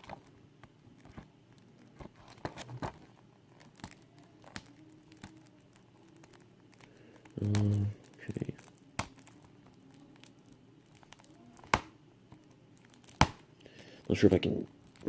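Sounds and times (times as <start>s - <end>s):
plastic wrapping crinkling: 0.0s - 15.0s.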